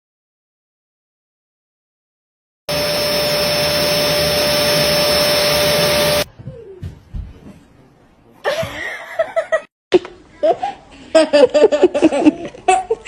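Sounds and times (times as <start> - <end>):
loud motor whir with whine: 2.7 - 6.3.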